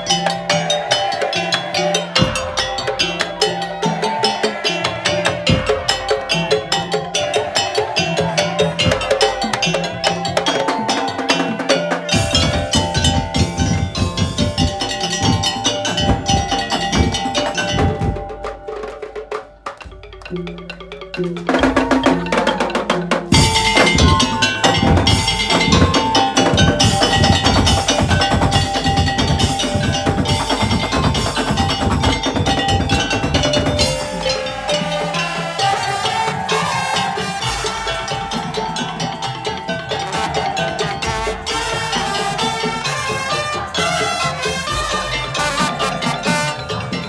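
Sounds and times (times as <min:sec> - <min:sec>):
fast dense drumming: 0:00.0 - 0:47.0
wooden percussion: 0:00.0 - 0:47.0.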